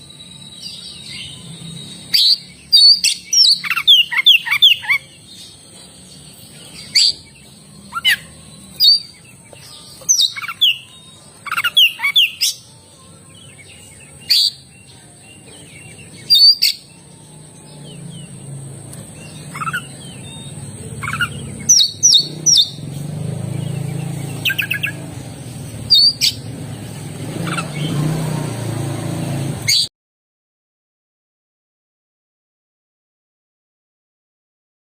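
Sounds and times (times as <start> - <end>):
bird singing sharp chirps: 0.0 - 29.9.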